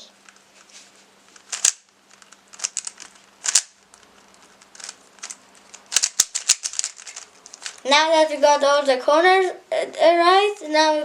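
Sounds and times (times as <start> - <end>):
puzzle cube layers clicking: 1.4 - 7.8.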